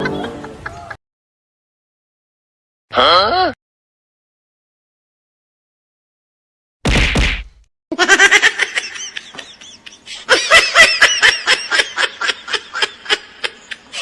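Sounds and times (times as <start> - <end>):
person laughing hard: 7.9 - 14.0.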